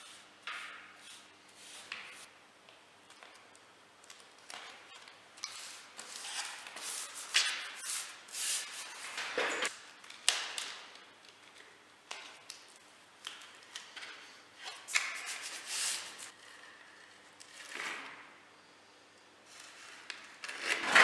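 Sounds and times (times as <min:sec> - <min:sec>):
hands rustling and scraping: 0:00.0 - 0:02.3, 0:04.9 - 0:09.6, 0:14.7 - 0:16.3.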